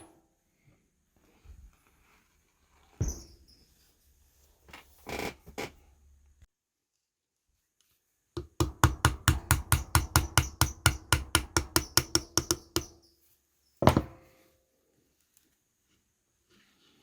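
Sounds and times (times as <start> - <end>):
hammer tapping metal: 8.4 - 13.0.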